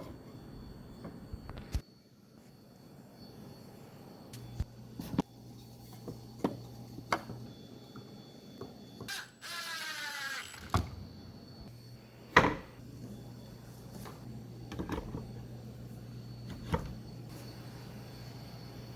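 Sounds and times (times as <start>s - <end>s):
rising squeak: 9.1s - 10.9s.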